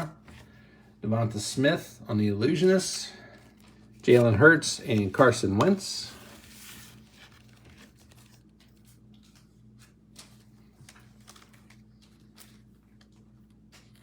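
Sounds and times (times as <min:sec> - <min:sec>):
low electrical hum: 0:00.0 - 0:14.0
trading cards clicking and rustling: 0:03.4 - 0:14.0.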